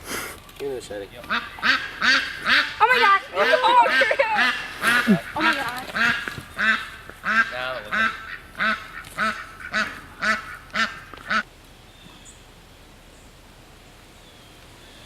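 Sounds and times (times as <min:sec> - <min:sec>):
duck quacking: 0:01.2 - 0:11.4.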